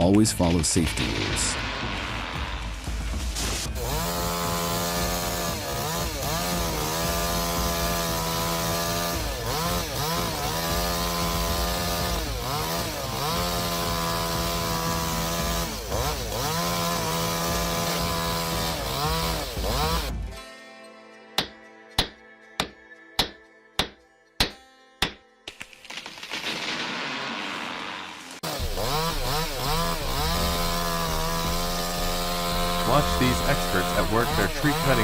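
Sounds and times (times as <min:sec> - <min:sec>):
chainsaw cutting at high revs: 0:01.6 - 0:20.3, 0:27.9 - 0:35.0.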